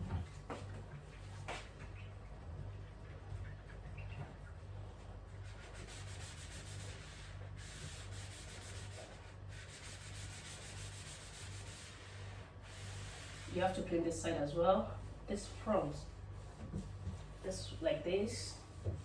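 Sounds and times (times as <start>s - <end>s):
sponge scrubbing a surface: 4.9s - 14.0s, 15.4s - 19.0s.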